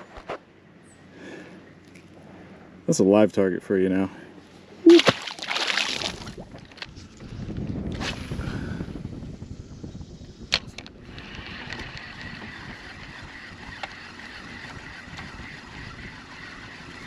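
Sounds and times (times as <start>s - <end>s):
wind noise on microphone: 6.0s - 17.0s
fishing reel whirring: 11.0s - 17.0s.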